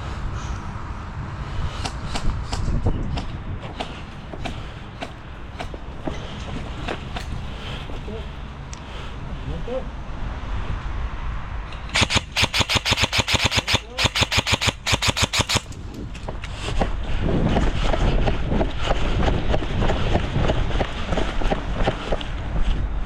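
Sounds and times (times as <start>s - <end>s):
airsoft gun full-auto bursts: 12.0s - 15.8s.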